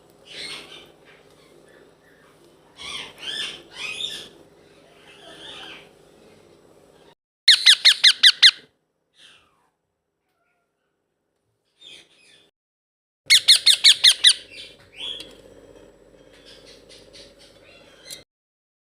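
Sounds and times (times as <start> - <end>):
parakeet squawking and chirping: 0.3 - 5.9, 7.5 - 9.6, 13.3 - 15.3, 16.3 - 18.2.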